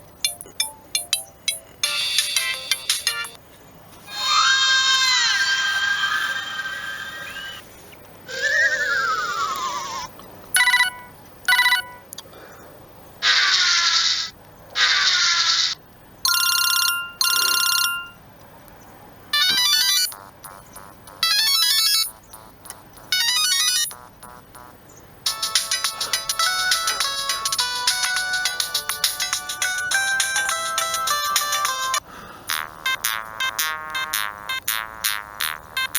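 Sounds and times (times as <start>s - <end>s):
ringtone melody: 0.0s - 3.4s, 10.6s - 12.0s, 16.3s - 18.2s, 19.4s - 35.9s
mobile phone alert sounds: 0.2s - 3.4s, 10.6s - 12.0s, 16.3s - 18.2s, 19.4s - 24.7s.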